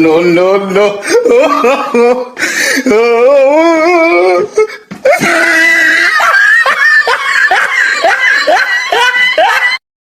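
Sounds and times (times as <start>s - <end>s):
high wavering comic wail: 3.0s - 9.8s.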